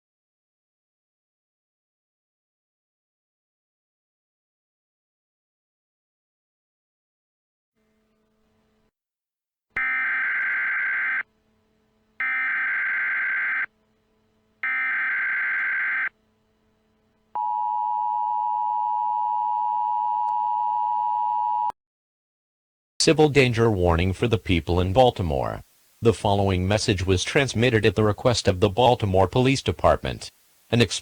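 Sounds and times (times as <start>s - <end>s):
digital header data bursts: 12.2s - 13.7s, 14.6s - 16.1s
two-tone attention signal: 12.2s - 13.7s, 14.6s - 16.1s.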